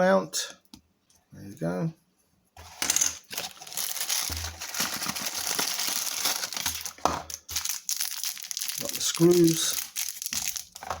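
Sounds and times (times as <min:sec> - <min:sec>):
plastic packaging crinkling: 0:02.6 - 0:11.0.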